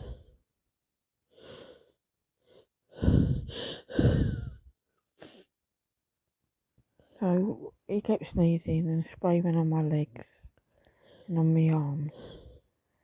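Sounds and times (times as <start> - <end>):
woman gasping breaths: 0.0 - 0.4, 1.3 - 5.5, 10.7 - 11.3, 12.1 - 13.0.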